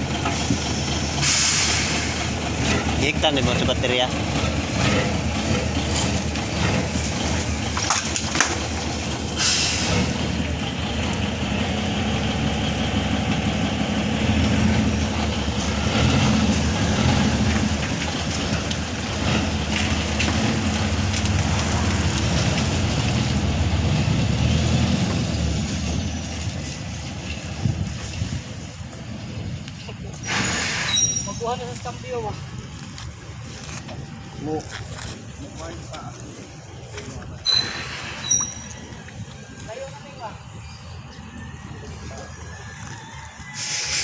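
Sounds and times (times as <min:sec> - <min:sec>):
diesel engine running: 0:00.0 - 0:44.0
short hiss: 0:01.2 - 0:02.2, 0:09.4 - 0:10.1, 0:30.2 - 0:31.1, 0:43.6 - 0:44.0.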